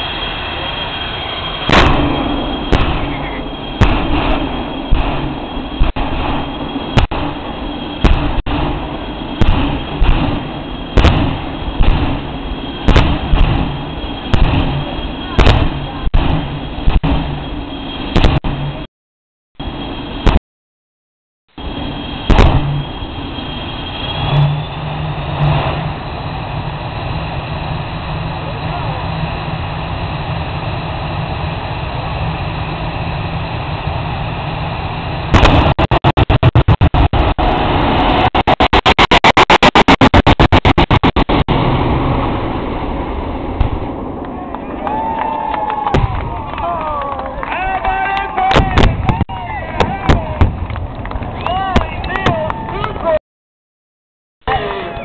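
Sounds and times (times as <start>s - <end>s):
jet engines running: 0.0s - 18.9s, 19.6s - 20.4s, 21.5s - 53.2s
steady rumble: 0.0s - 18.9s, 19.6s - 20.4s, 21.5s - 44.9s
sharp bangs: 1.4s - 18.9s, 21.6s - 24.6s, 35.2s - 44.2s
rapidly chopped sound: 35.4s - 37.4s, 38.1s - 41.5s.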